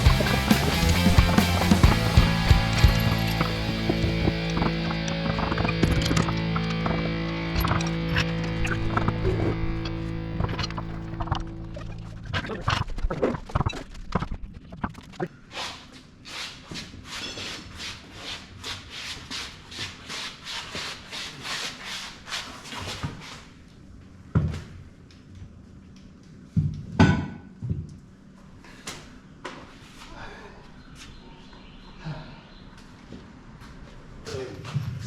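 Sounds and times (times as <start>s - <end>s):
clattering: 0.0s - 9.3s
hand tool strokes: 0.0s - 9.7s, 15.5s - 23.4s.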